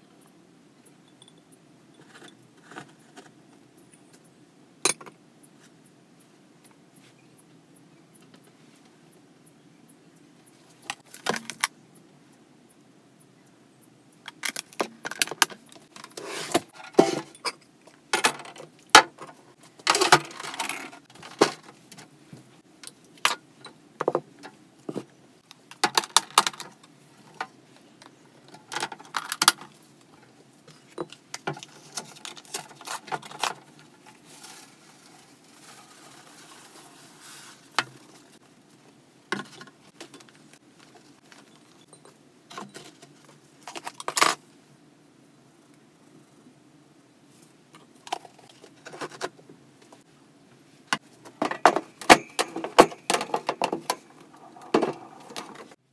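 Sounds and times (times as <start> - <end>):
plastic cage parts clattering: 18.2 - 22.1, 25.7 - 27.5, 28.5 - 29.8, 30.9 - 38.3, 51.2 - 55.8
faint rustling: 33.7 - 38.4.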